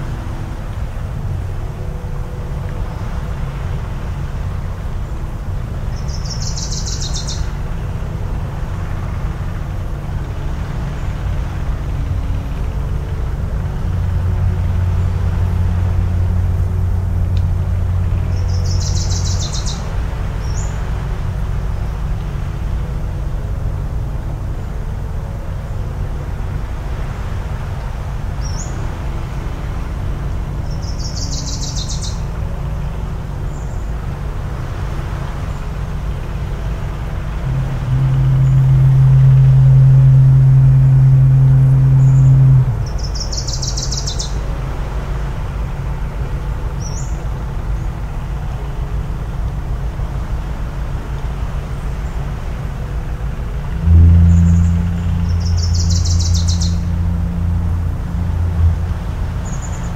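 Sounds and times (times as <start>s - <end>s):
low rumble of surf: 0.0s - 59.9s
foghorn blasts: 32.3s - 43.7s, 47.2s - 59.9s
bird short high calls: 54.1s - 57.2s.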